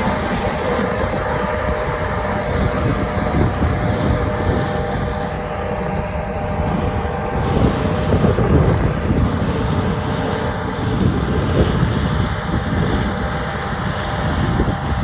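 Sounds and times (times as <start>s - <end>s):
combine harvester running: 0.0s - 15.0s.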